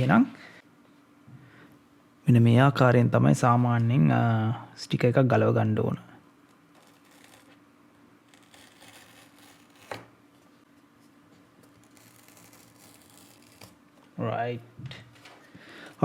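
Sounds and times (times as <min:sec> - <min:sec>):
sticker peeling and tearing: 0:06.7 - 0:07.6, 0:08.2 - 0:10.1, 0:11.6 - 0:13.8.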